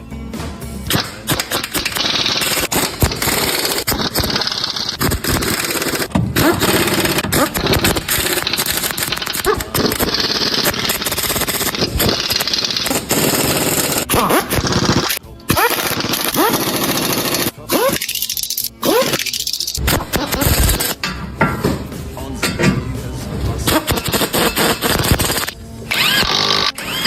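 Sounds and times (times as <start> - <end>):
background music: 0.0 - 27.0
power tool hammering: 0.9 - 17.5.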